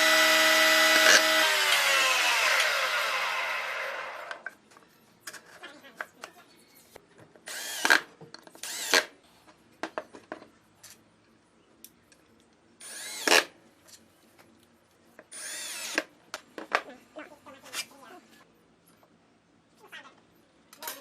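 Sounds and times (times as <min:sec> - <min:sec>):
power drill whining: 0:00.0 - 0:04.4, 0:07.5 - 0:08.0, 0:12.8 - 0:13.4, 0:15.3 - 0:16.0.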